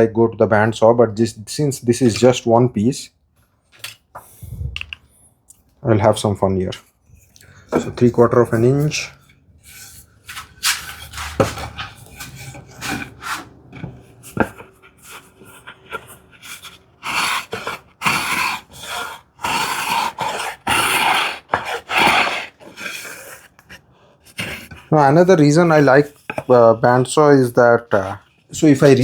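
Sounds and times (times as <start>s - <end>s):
cutter scraping along wood: 7.7s - 29.0s.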